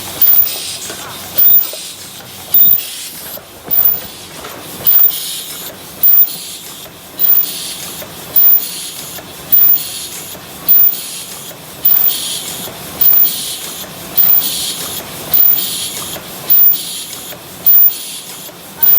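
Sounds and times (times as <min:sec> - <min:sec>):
machine stroke: 0:02.5 - 0:05.4.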